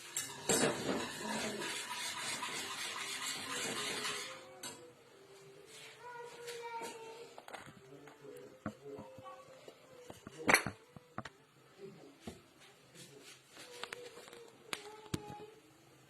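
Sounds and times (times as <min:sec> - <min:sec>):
utensils and dishes clinking: 0:00.0 - 0:04.9.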